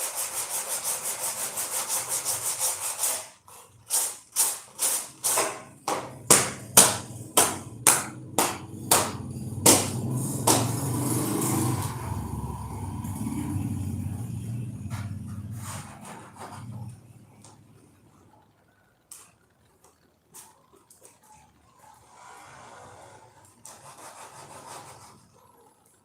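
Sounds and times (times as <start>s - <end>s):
rubbing strokes on dashboard: 0.0s - 5.4s, 14.8s - 17.0s, 22.0s - 25.4s
low hum: 7.0s - 23.6s.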